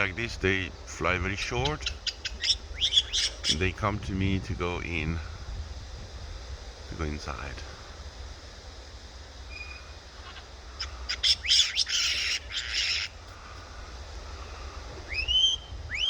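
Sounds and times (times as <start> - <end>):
kites whistled calls: 0.0 - 5.1, 9.5 - 16.0.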